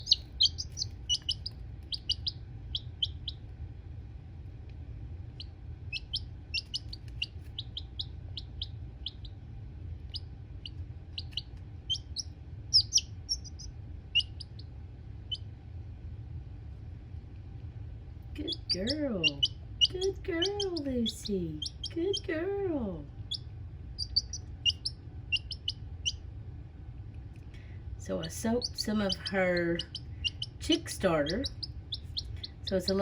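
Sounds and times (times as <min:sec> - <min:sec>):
chick peeping: 0:00.0 - 0:03.5, 0:05.3 - 0:09.4, 0:10.0 - 0:15.5, 0:18.4 - 0:22.4, 0:23.2 - 0:26.2, 0:28.2 - 0:33.0
steady low hum: 0:00.0 - 0:33.0.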